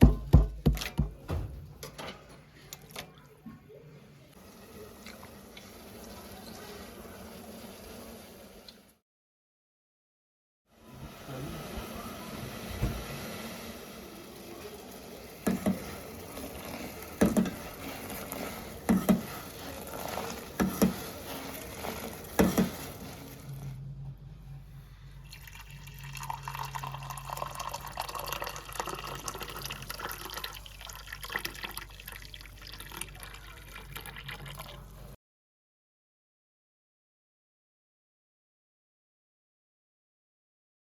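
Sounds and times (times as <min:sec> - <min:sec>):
liquid being poured: 0:13.0 - 0:23.7, 0:25.2 - 0:35.1.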